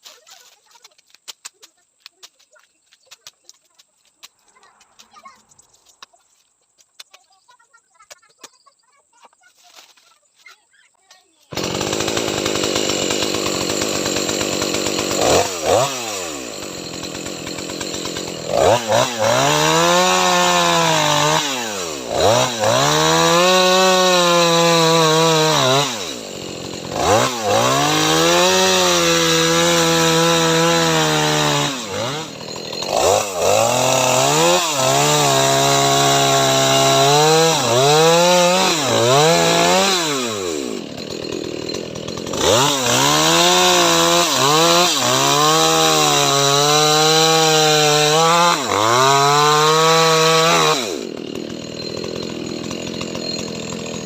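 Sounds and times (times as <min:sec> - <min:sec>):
chainsaw revving cutting wood: 0:11.4 - 0:54.0.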